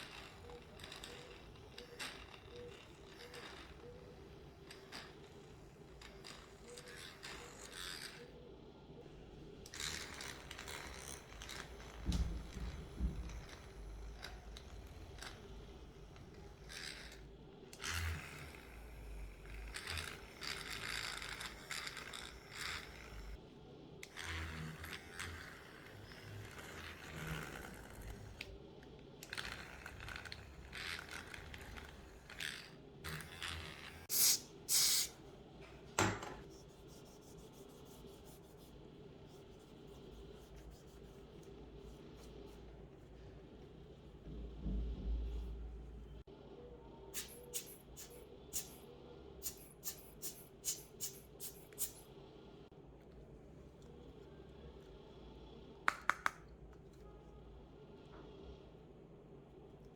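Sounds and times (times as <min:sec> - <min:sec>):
tool scraping glass: 0:00.0 - 0:08.4, 0:09.7 - 0:23.4.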